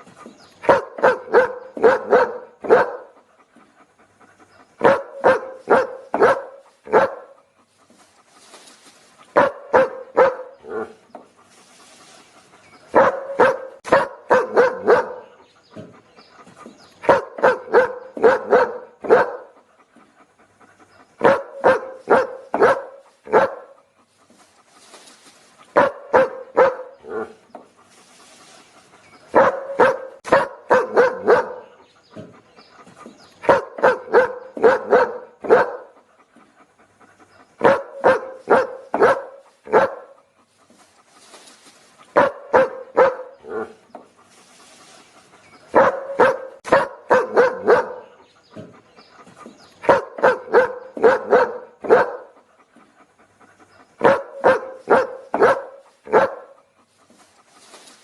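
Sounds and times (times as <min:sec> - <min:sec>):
dog barking: 0:00.6 - 0:03.2, 0:04.8 - 0:07.4, 0:09.3 - 0:11.0, 0:12.9 - 0:15.4, 0:17.0 - 0:19.6, 0:21.2 - 0:23.8, 0:25.7 - 0:27.4, 0:29.3 - 0:32.3, 0:33.4 - 0:36.0, 0:37.6 - 0:40.2, 0:42.1 - 0:43.8, 0:45.7 - 0:48.7, 0:49.8 - 0:52.4, 0:54.0 - 0:56.6.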